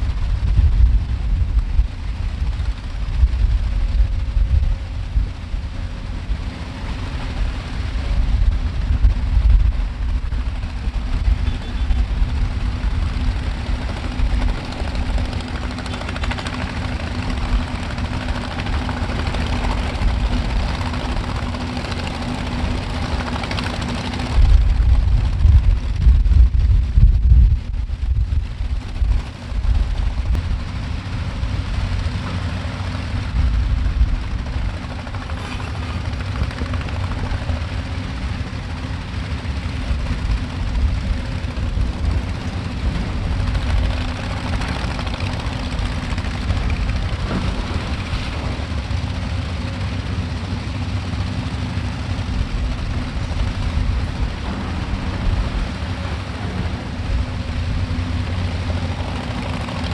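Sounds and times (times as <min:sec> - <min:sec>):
vehicle engine droning: 0:00.0 - 0:59.9
wind rumbling on microphone: 0:00.0 - 0:59.9.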